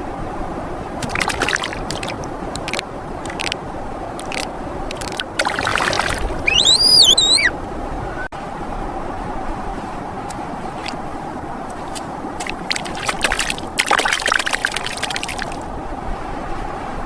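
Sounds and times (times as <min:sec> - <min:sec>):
water-like noise: 0:00.0 - 0:17.0
clicks and splashes: 0:01.0 - 0:03.6, 0:04.2 - 0:07.4, 0:11.8 - 0:15.6
animal wavering call: 0:06.1 - 0:08.3.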